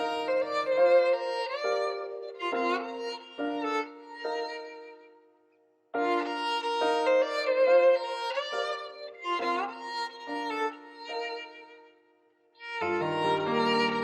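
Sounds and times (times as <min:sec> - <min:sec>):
solo violin slow melody: 0:00.0 - 0:05.2, 0:06.0 - 0:12.0, 0:12.6 - 0:14.0.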